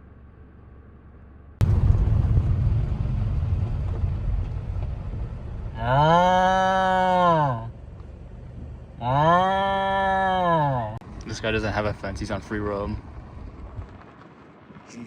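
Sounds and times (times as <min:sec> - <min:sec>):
loud low rumble: 0:01.6 - 0:13.9
cow mooing: 0:05.8 - 0:07.7, 0:09.0 - 0:11.0.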